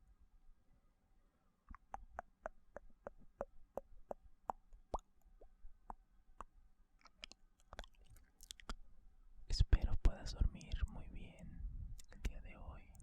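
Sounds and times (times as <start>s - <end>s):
wet mouth clicks and pops: 1.7s - 8.8s, 12.0s - 12.2s.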